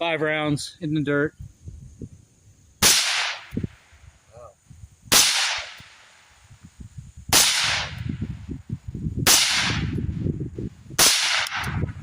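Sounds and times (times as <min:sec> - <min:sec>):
suppressed rifle shots: 0:02.8 - 0:03.6, 0:05.1 - 0:06.0, 0:07.3 - 0:08.1, 0:09.3 - 0:10.0, 0:11.0 - 0:11.9.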